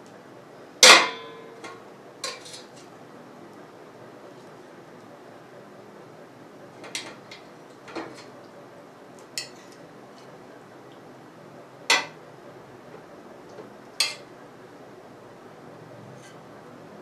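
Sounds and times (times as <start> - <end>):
metal cookware clinking: 0.8 - 2.7, 9.4 - 9.7, 11.9 - 12.2, 14.0 - 14.3.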